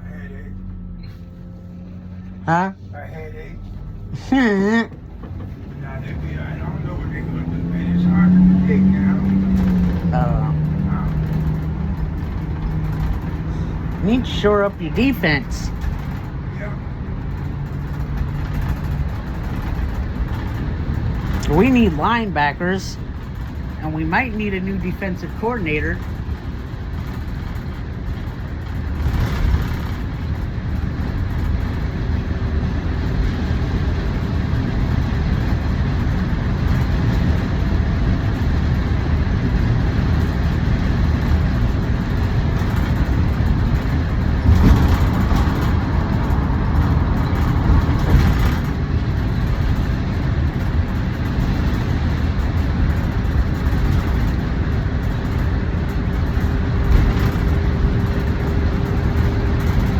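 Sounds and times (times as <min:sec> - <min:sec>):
louder vehicles passing: 0:00.0 - 0:59.9
rumble of passing vehicles: 0:00.0 - 0:59.9.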